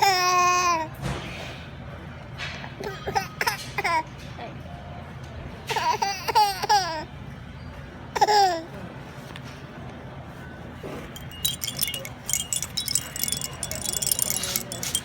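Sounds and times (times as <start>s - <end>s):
small metal pieces jingling: 11.2s - 15.0s.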